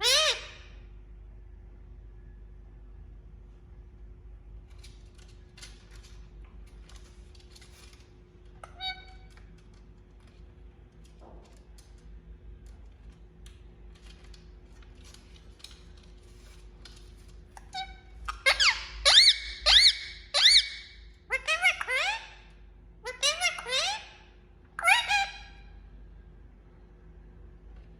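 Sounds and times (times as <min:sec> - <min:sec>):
parrot squeaky call: 0:00.0 - 0:00.8, 0:08.6 - 0:09.3, 0:17.6 - 0:22.4, 0:23.0 - 0:25.6
faint clicks and scratches: 0:04.6 - 0:17.8.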